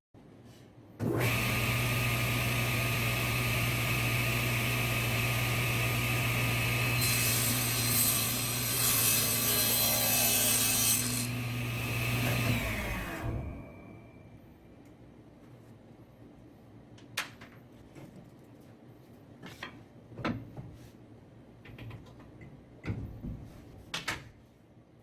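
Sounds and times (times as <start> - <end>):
table saw running: 1.0 - 13.7
saw blade cutting wood: 1.1 - 13.4.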